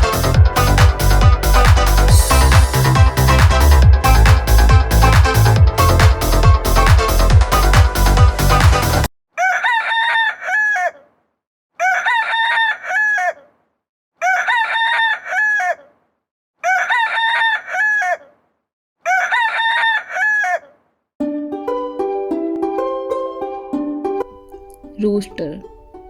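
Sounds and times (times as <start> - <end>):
plucked-string music: 0.0 - 9.0, 21.2 - 26.0.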